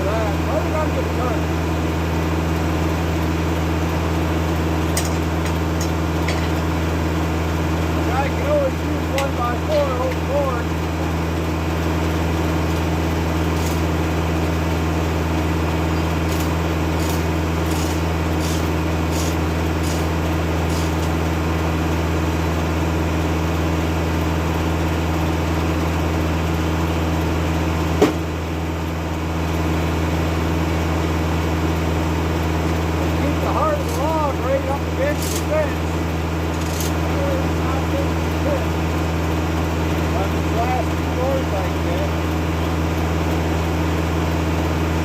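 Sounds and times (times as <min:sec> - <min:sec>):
tractor diesel engine running: 0:00.0 - 0:45.0
sharp knock: 0:28.0 - 0:28.2.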